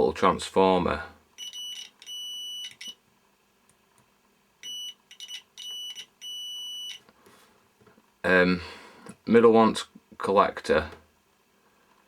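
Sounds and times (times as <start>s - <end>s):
multimeter continuity beeps: 1.4s - 3.0s, 4.6s - 7.0s.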